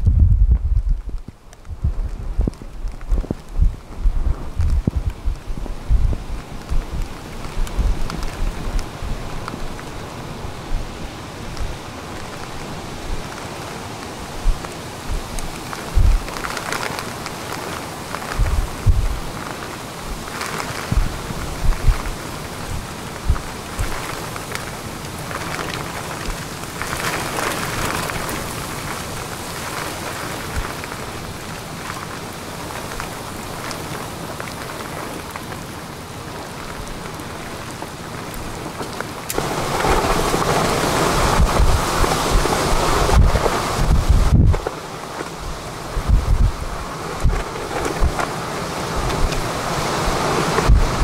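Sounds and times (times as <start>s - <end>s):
low thunder rumbling: 0.0s - 13.4s, 14.2s - 17.0s, 18.2s - 24.8s, 39.3s - 44.7s, 45.4s - 48.2s, 48.9s - 51.0s
gusting wind: 0.0s - 51.0s
heavy rain: 0.0s - 51.0s.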